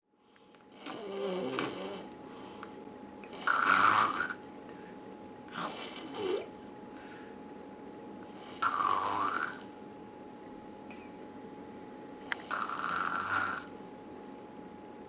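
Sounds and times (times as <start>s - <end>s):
person snoring: 0.8s - 2.1s, 3.3s - 4.4s, 5.5s - 6.6s, 8.4s - 9.6s, 12.3s - 13.7s.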